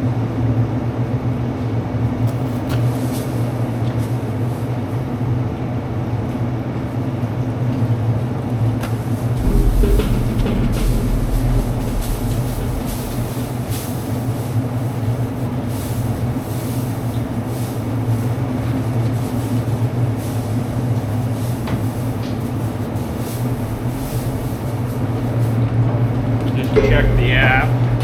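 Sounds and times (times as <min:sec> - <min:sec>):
low machine rumble with hum: 0:09.4 - 0:28.0.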